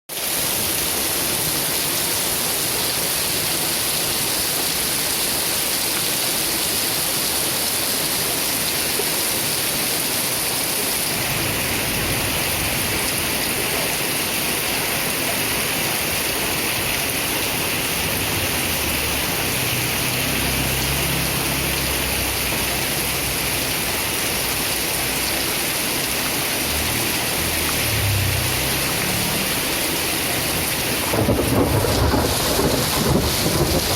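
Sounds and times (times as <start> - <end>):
heavy rain falling: 0.1 - 33.9
distant thunder rumbling: 31.1 - 33.9.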